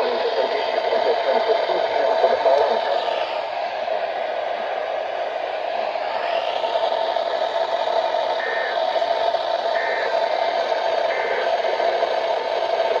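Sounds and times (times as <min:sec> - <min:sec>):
radio static hiss: 0:00.0 - 0:03.3, 0:08.4 - 0:09.2, 0:09.8 - 0:13.0
warbling data bursts: 0:08.4 - 0:08.9, 0:09.8 - 0:12.2.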